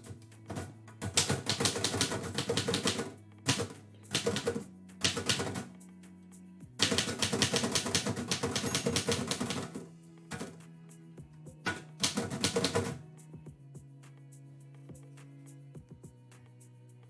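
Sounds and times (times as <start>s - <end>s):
typewriter keys striking: 0.0s - 5.7s, 6.8s - 9.8s, 11.7s - 13.0s
quiet background music: 0.0s - 17.0s.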